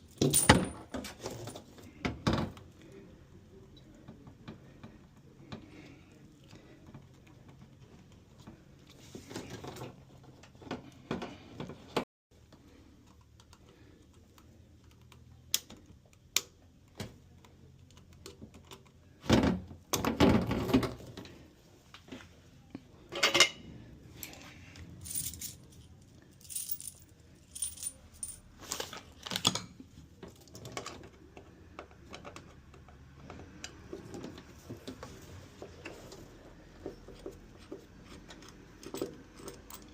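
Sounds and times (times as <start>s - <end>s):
metal tools clinking: 24.2s - 28.4s.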